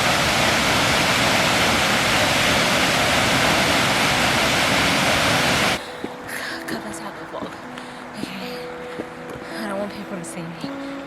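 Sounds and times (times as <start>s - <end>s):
waterfall rushing: 0.0s - 6.6s.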